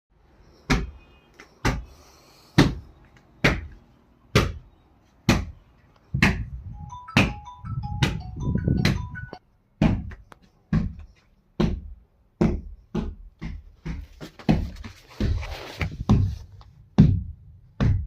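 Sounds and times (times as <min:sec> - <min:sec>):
heavy thudding beat: 0:06.2 - 0:11.0
held-note melody: 0:06.6 - 0:09.4.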